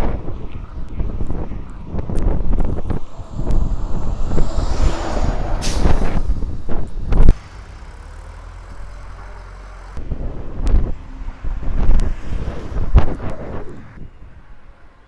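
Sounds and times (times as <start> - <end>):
wind buffeting microphone: 0.6 - 7.5
steady low hum: 2.6 - 7.4.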